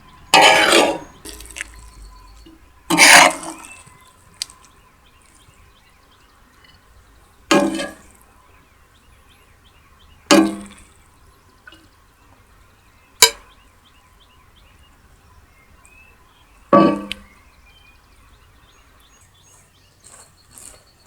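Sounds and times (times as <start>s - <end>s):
metal utensil clanging on pan: 0.4s - 1.9s, 7.5s - 8.1s, 10.3s - 10.8s, 13.2s - 13.5s, 16.7s - 17.3s.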